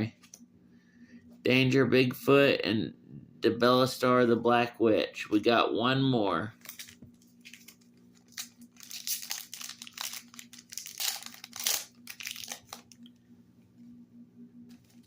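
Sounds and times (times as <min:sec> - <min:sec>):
faint steady hum: 0:00.0 - 0:15.0
foil wrapper crinkling and tearing: 0:06.6 - 0:13.1.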